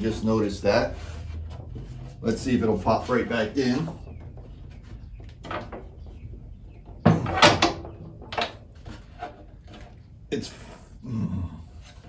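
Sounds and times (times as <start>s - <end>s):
clunks and knocks on a machine part: 6.9s - 8.6s.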